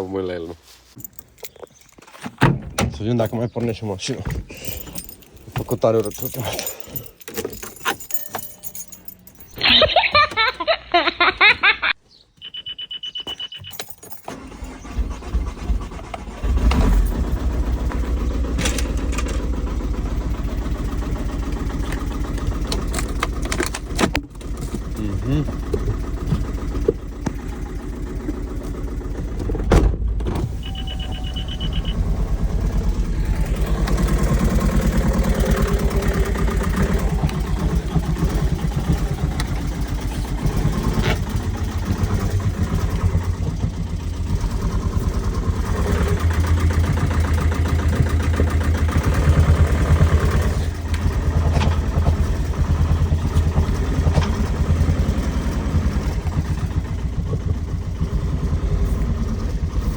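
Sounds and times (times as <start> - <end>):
short high beep: 12.4 - 13.8, 30.6 - 32.0
knocking engine revving: 14.3 - 59.9.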